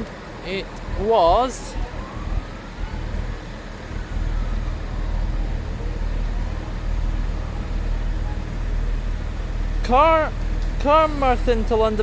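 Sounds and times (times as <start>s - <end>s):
train passing: 0.0s - 12.0s.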